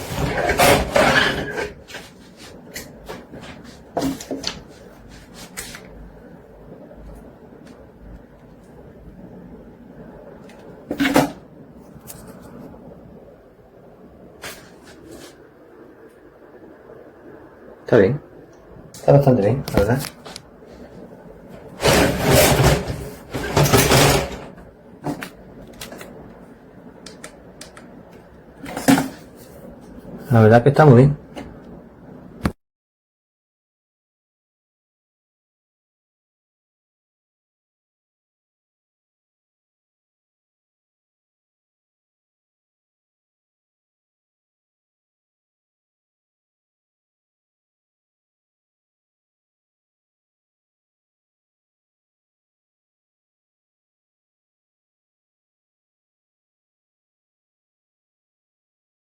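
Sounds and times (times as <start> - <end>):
scraping rustling handling noise: 0.0 - 6.0, 19.8 - 26.1.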